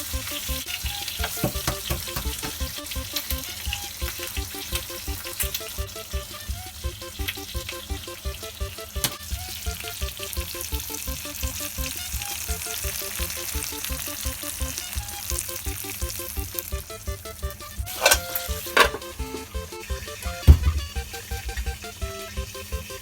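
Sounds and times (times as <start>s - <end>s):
bacon and eggs sizzling: 0.0s - 23.0s
quiet background music: 0.0s - 23.0s
fat popping: 1.1s - 6.4s.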